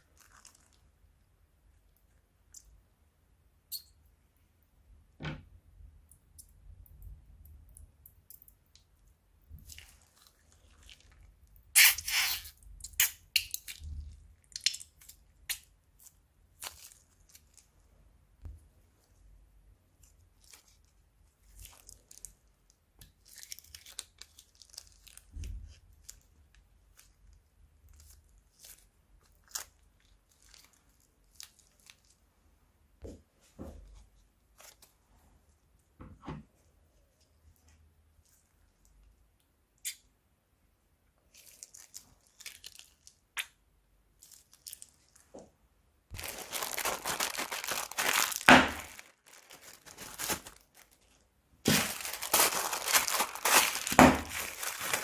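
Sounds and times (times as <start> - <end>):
slime squeezed crackling: 0.0 - 0.9, 27.8 - 32.2, 46.1 - 51.0, 51.7 - 55.0.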